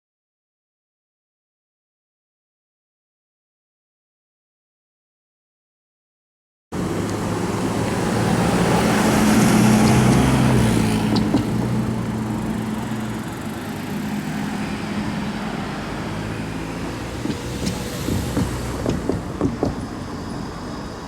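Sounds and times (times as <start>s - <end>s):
vehicle engine passing: 6.8s - 21.0s.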